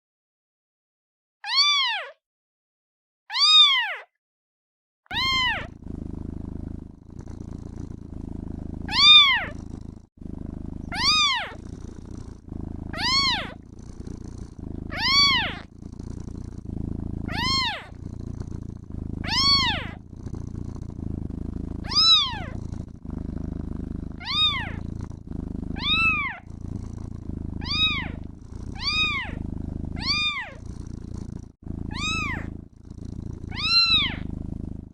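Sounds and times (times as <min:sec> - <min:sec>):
kitten meowing: 0:01.4 - 0:02.2, 0:03.3 - 0:04.1, 0:05.1 - 0:05.7, 0:08.9 - 0:09.6, 0:10.9 - 0:11.6, 0:12.9 - 0:13.6, 0:14.9 - 0:15.7, 0:17.3 - 0:17.9, 0:19.2 - 0:20.0, 0:21.8 - 0:22.6, 0:24.2 - 0:24.8, 0:25.8 - 0:26.4, 0:27.6 - 0:28.2, 0:28.8 - 0:29.4, 0:30.0 - 0:30.6, 0:31.9 - 0:32.5, 0:33.5 - 0:34.2
low purring: 0:05.1 - 0:34.9.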